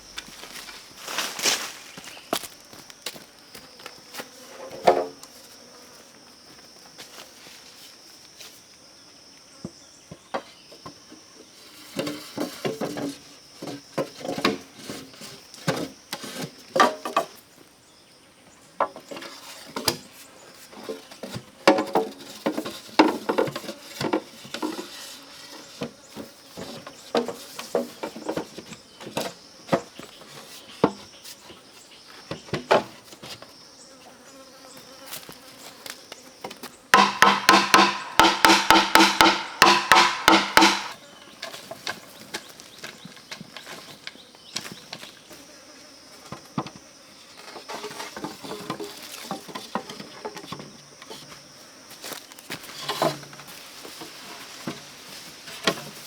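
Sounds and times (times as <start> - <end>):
rustling: 0.0 - 4.5
high-pitched insect chorus: 0.0 - 21.0, 22.0 - 56.0.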